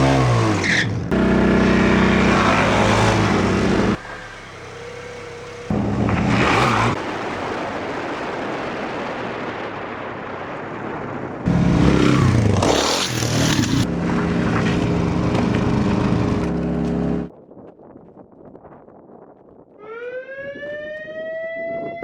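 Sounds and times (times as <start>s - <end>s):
motor vehicle engine running: 0.0s - 7.0s, 11.5s - 17.3s.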